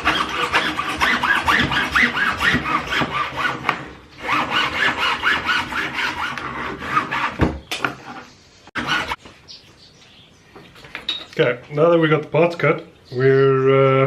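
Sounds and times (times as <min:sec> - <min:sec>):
hand saw cutting plastic pipe: 0:00.0 - 0:09.2.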